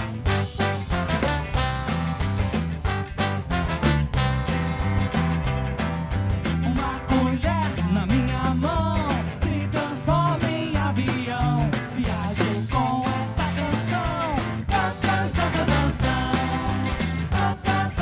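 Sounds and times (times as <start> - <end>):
live band playing upbeat song: 0.0 - 18.0
person singing: 6.7 - 18.0.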